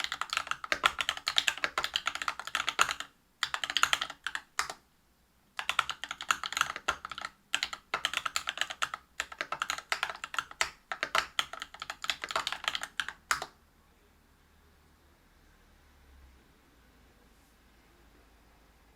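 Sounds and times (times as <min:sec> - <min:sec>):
fast typing on mechanical keyboard: 0:00.0 - 0:04.8, 0:05.6 - 0:13.5.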